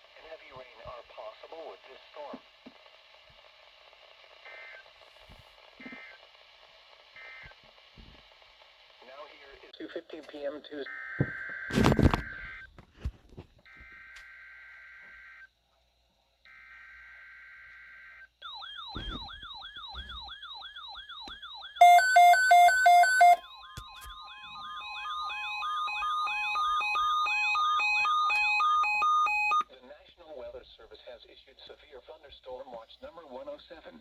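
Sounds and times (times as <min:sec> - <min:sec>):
loud pulsing beeps: 0:18.5 - 0:20.4, 0:21.2 - 0:29.6.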